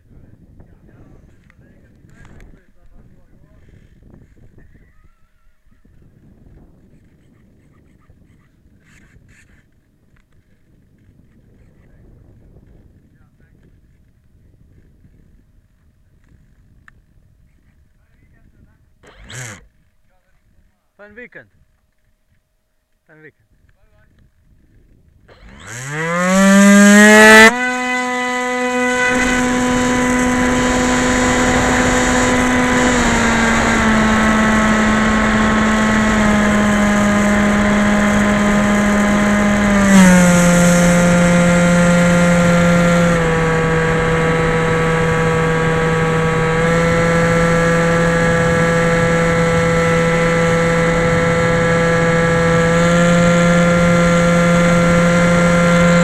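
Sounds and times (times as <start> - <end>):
electric motor whine: 19.0 - 19.8, 25.3 - 56.0.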